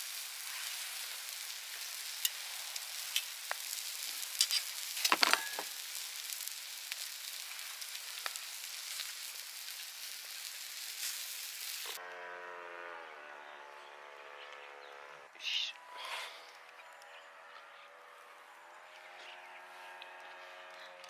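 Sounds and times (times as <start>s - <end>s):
food sizzling with crackling pops: 0.0s - 12.0s
horn-like chord tone: 12.0s - 20.7s.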